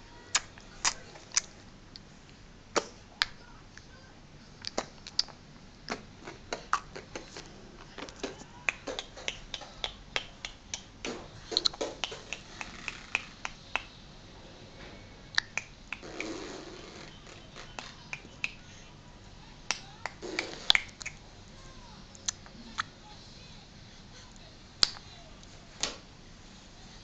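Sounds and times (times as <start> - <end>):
baby making clicking mouth sounds: 15.3 - 16.0, 19.7 - 21.2.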